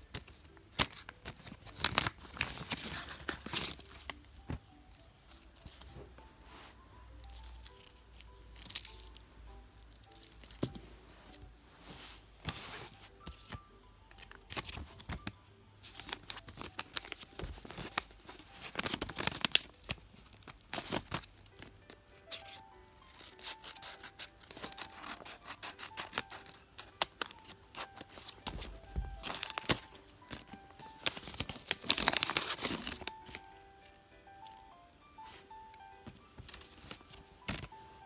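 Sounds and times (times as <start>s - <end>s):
quiet background music: 0.0s - 38.0s
packaging tearing and crinkling: 0.8s - 3.9s, 16.0s - 21.7s, 23.2s - 33.5s.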